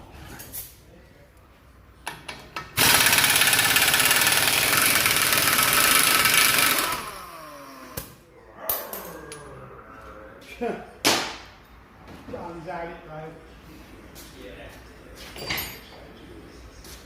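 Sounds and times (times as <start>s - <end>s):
impact wrench running: 2.7s - 8.2s.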